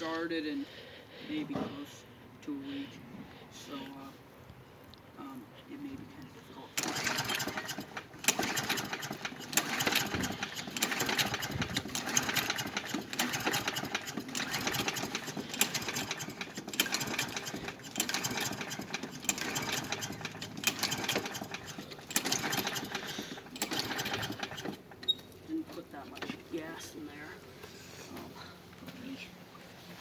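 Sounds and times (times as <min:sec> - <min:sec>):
mower engine pull-starting: 0:06.6 - 0:28.7.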